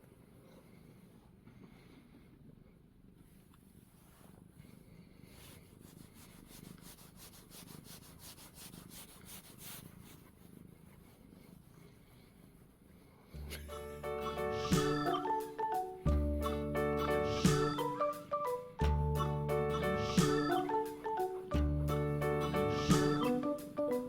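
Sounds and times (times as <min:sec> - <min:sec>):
brush sweeping through fur: 0:05.2 - 0:11.7.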